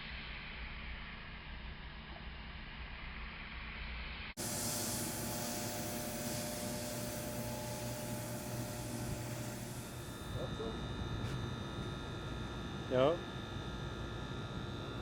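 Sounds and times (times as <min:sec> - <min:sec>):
hose water spraying hiss: 0:04.4 - 0:10.4
unit hum: 0:04.4 - 0:15.0.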